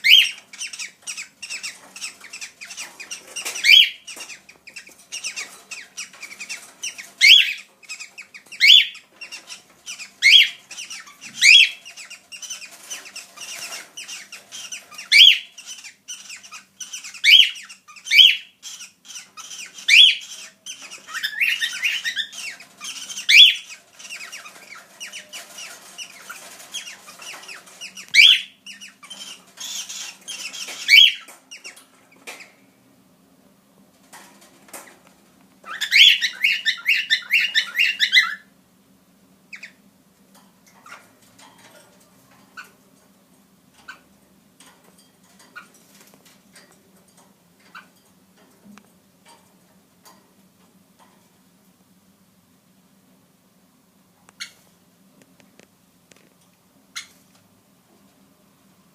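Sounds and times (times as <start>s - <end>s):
cockatiels sharp upward calls: 0.0s - 4.2s, 6.4s - 25.7s, 26.3s - 31.3s, 35.7s - 38.5s
soft bird chirping: 0.0s - 32.7s, 35.6s - 38.5s, 39.5s - 39.8s.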